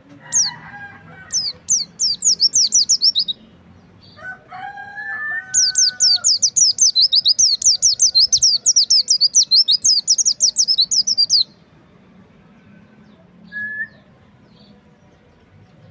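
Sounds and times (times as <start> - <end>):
rooster crowing: 0.2 - 1.8, 4.2 - 6.5
bird twittering song: 1.2 - 4.3, 5.4 - 11.6.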